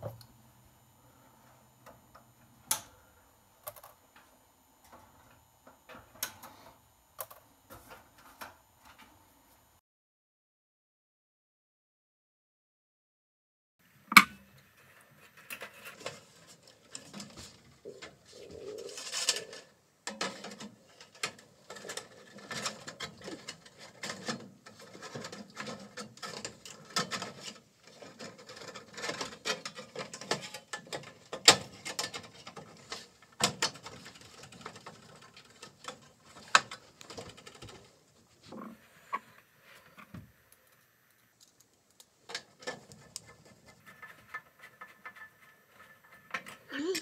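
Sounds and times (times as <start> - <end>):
hands handling plastic parts: 15.2 - 38.5, 39.8 - 47.0.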